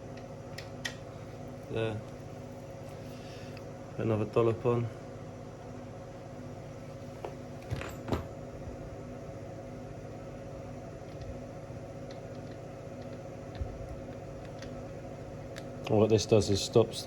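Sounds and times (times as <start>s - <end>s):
electrical hum: 0.0s - 17.0s.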